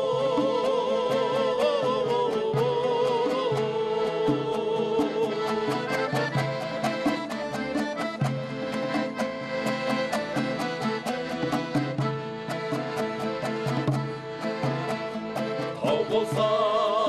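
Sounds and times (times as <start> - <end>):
instrumental melody: 0.0 - 17.0
light percussion beat: 2.6 - 16.6.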